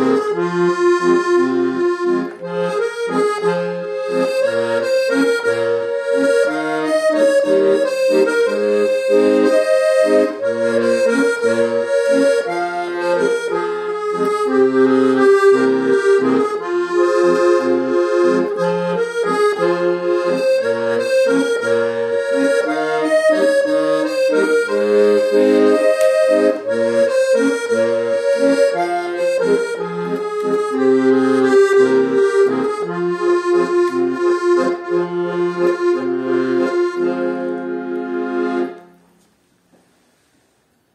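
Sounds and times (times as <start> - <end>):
accordion playing a tune: 0.0 - 39.3.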